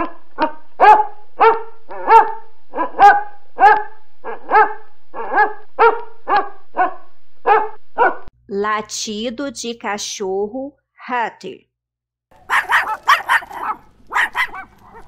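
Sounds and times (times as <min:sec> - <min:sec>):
dog barking: 0:00.0 - 0:08.3, 0:12.4 - 0:15.0.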